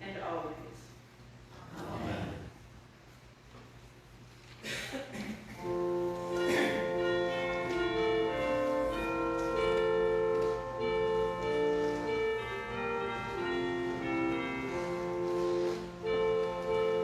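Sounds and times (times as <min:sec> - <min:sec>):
slow instrumental melody: 0:05.6 - 0:17.0.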